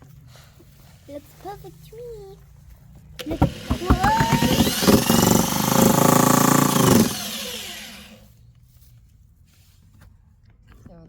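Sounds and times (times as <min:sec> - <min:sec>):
spin-art machine whirring: 0:03.2 - 0:08.2.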